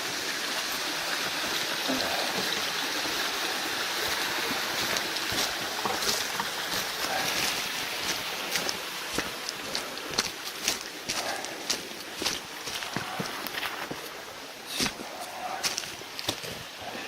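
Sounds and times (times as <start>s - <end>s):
river water rushing: 0.0s - 17.0s
footsteps on stones: 4.1s - 16.6s
undergrowth clicking: 4.8s - 16.6s.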